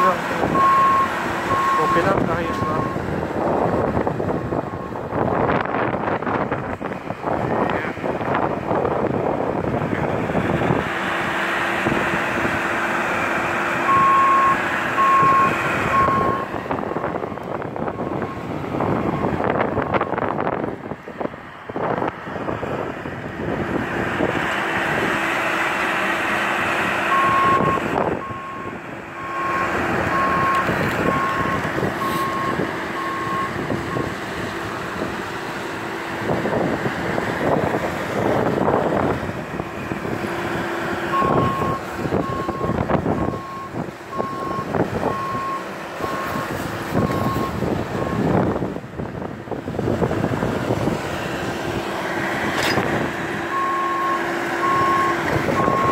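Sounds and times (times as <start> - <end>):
truck reversing alarm beeping: 0.0 - 5.6, 13.8 - 20.5, 27.0 - 34.4, 41.0 - 48.5, 53.4 - 55.9
engine humming: 0.0 - 55.9.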